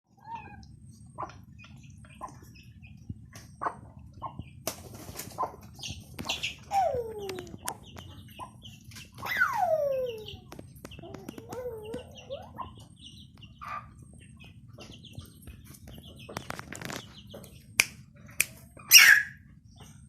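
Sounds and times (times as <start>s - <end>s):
young rooster clucking and chirping: 0.2s - 20.0s
young rooster squeaky crow: 9.2s - 10.3s, 18.9s - 19.4s.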